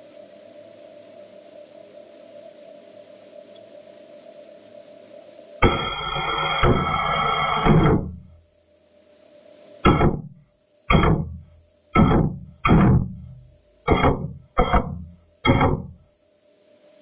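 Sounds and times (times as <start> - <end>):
faint steady hum: 0.0 - 17.0
thruster thumps with rushing tail: 5.6 - 8.4, 9.9 - 16.0.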